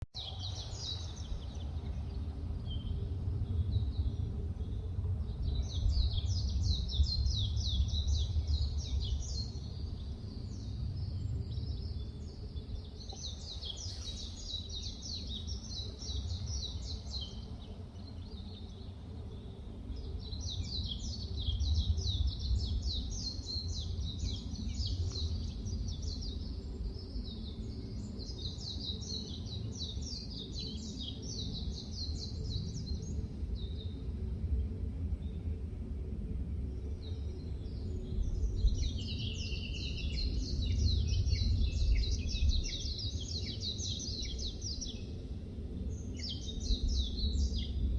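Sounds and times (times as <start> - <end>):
low rumble: 0.2 - 30.2
songbirds chirping: 0.2 - 47.9.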